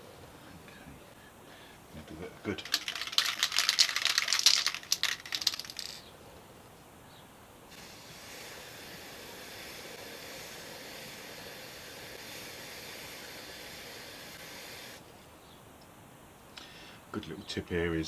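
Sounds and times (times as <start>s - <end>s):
aerosol spray hissing: 7.7s - 15.0s.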